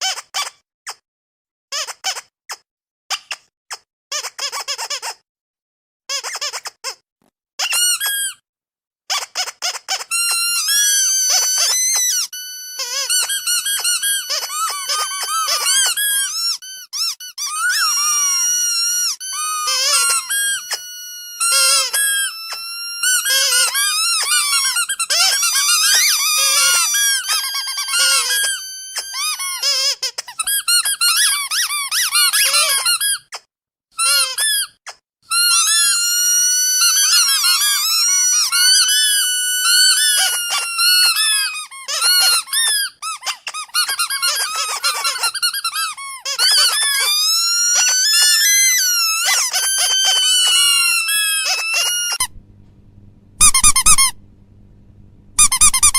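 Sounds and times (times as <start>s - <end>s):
high-pitched squeaking: 9.1s - 33.0s, 41.9s - 55.9s.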